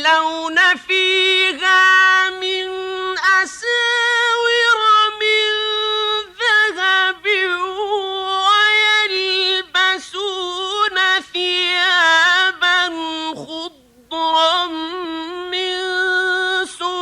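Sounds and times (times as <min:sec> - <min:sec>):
man chanting melodically: 0:09.6 - 0:17.0.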